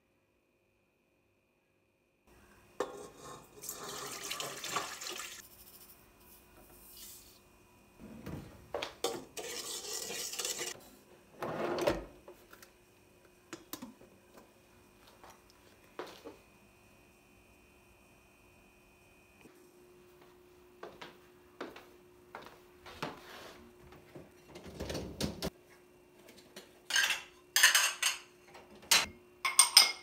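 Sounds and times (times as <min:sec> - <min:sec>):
water running from a tap: 0:03.5 - 0:05.4
dishes and cutlery clinking: 0:26.9 - 0:28.3, 0:28.9 - 0:30.0.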